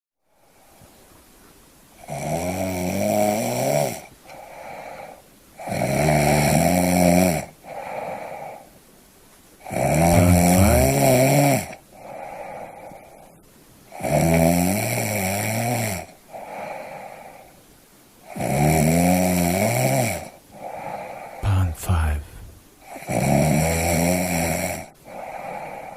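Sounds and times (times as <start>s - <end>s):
person snoring: 9.8s - 11.5s, 21.4s - 22.6s.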